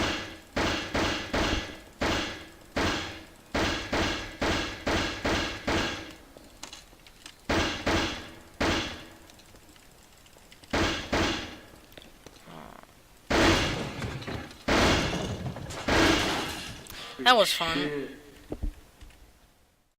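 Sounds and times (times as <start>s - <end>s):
sharp ringing bangs: 0.0s - 6.1s, 7.5s - 9.2s, 10.7s - 11.7s, 13.3s - 16.8s.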